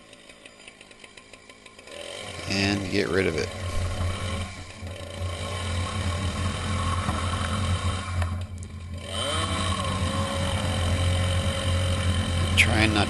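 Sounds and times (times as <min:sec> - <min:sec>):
chainsaw cutting log: 0:01.8 - 0:13.0.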